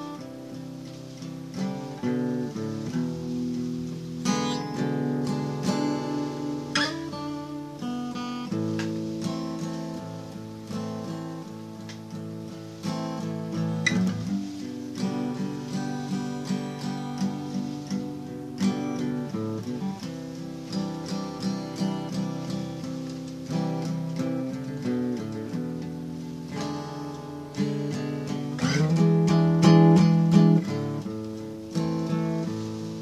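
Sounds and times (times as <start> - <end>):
acoustic guitar playing: 0.0 - 33.0.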